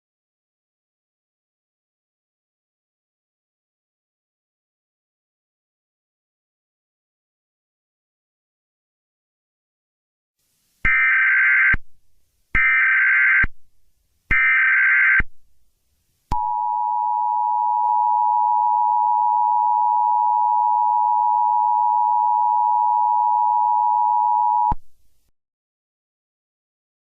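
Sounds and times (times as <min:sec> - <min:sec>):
two-tone alarm: 0:10.9 - 0:11.8, 0:12.6 - 0:13.5, 0:14.3 - 0:15.2, 0:16.4 - 0:24.8.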